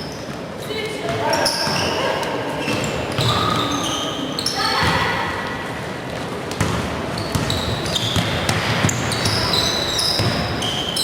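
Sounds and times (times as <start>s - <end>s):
sneakers squeaking on gym floor: 0.0s - 5.3s, 6.5s - 11.0s
gym hall noise: 0.0s - 11.0s
basketball bouncing: 6.5s - 10.8s.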